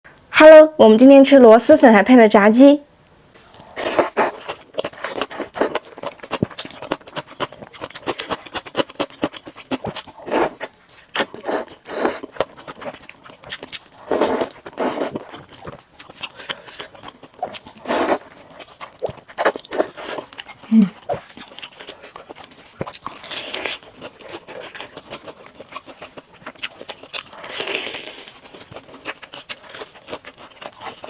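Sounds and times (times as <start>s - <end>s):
slurping noodles: 3.4s - 20.3s
chewing with wet smacks: 3.4s - 31.0s.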